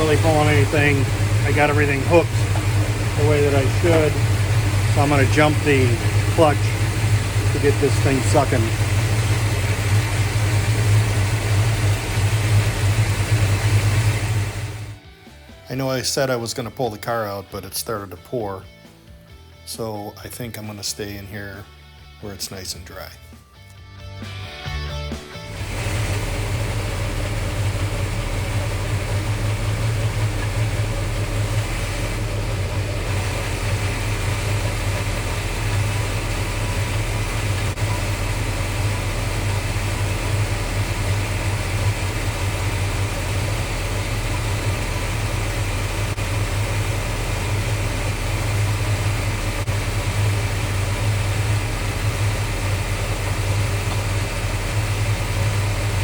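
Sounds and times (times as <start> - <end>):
car engine idling: 0.0 - 17.4, 25.3 - 56.0.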